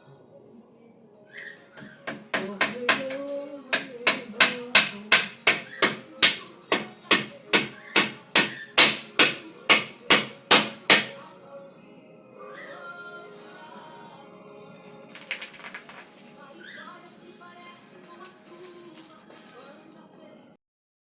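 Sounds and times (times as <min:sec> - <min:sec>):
steady hammering: 0:01.8 - 0:11.2.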